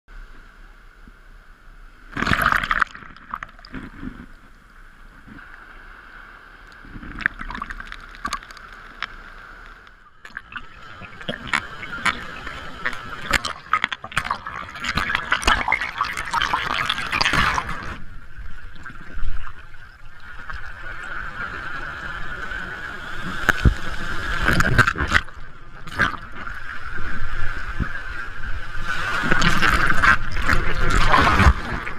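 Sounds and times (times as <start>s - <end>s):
ocean surf breaking: 5.3s - 18.1s.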